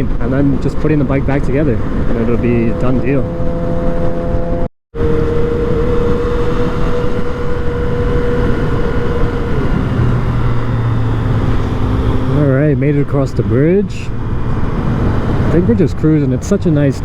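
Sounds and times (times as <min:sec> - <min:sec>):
motorcycle engine running: 0:00.2 - 0:15.6.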